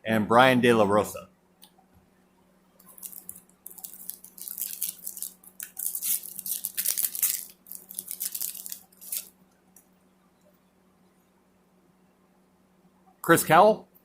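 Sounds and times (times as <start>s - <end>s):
wrapper tearing and crinkling: 2.8s - 9.3s.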